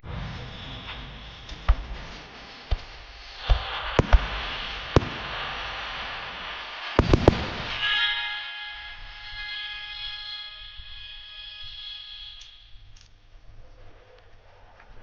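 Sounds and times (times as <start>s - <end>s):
fireworks bangs: 0.0s - 9.2s
fireworks crackling hiss: 0.0s - 9.8s.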